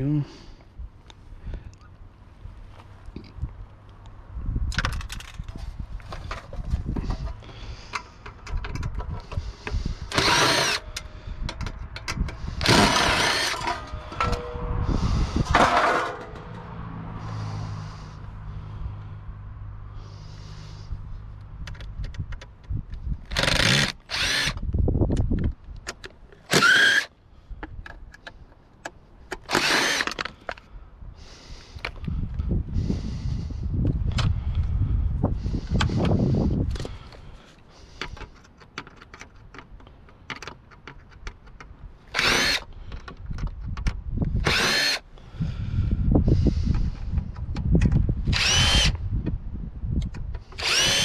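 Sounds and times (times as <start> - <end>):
power drill driving screws: 10.1 - 11.0, 12.6 - 14.4, 23.3 - 24.6, 26.4 - 27.1, 29.4 - 30.3, 42.1 - 42.7, 44.4 - 45.0, 48.3 - 49.0, 50.4 - 51.0.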